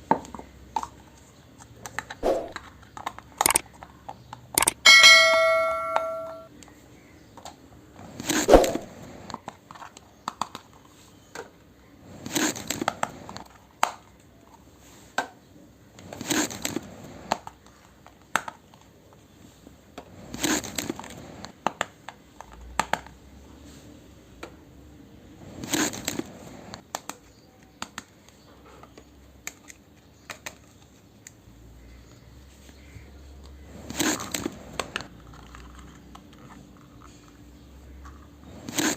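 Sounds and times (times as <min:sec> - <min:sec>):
small clicks: 0:03.4 - 0:03.6, 0:04.6 - 0:04.8
ringing ding: 0:04.6 - 0:06.5.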